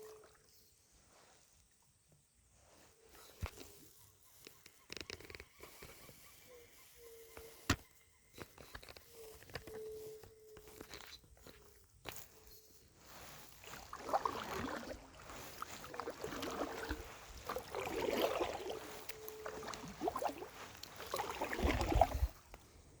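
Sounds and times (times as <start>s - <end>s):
water splashing and sloshing: 10.7s - 22.9s.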